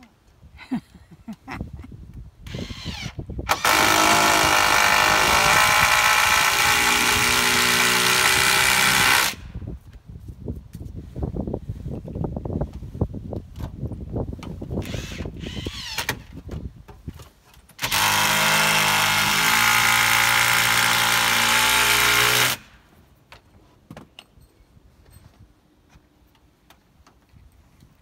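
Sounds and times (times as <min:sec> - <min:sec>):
power drill running: 0:02.5 - 0:09.4, 0:14.8 - 0:16.1, 0:17.8 - 0:22.6.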